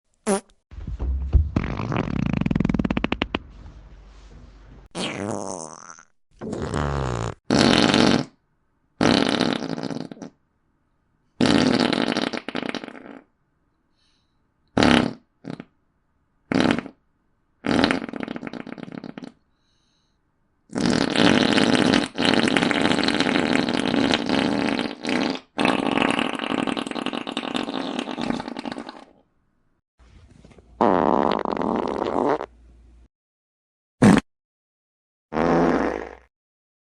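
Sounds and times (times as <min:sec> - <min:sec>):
fart sounds: 0:00.2 - 0:00.5, 0:01.6 - 0:03.4, 0:04.9 - 0:08.4, 0:09.0 - 0:10.4, 0:11.4 - 0:13.3, 0:14.8 - 0:15.7, 0:16.5 - 0:17.0, 0:17.6 - 0:19.4, 0:20.7 - 0:29.2, 0:30.8 - 0:32.5, 0:34.0 - 0:34.3, 0:35.3 - 0:36.3.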